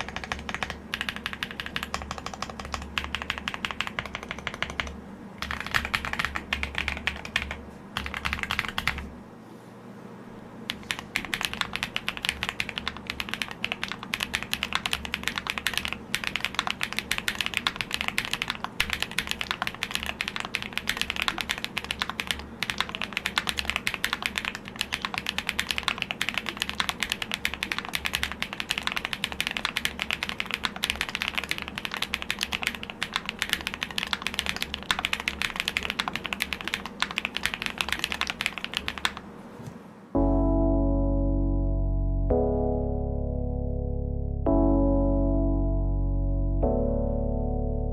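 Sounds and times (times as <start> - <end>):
fast typing on mechanical keyboard: 0.0 - 9.1, 10.7 - 39.3.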